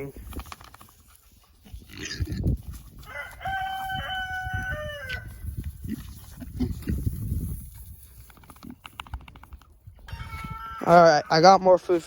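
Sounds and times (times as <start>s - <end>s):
rooster crowing: 3.0s - 5.3s, 10.1s - 11.3s.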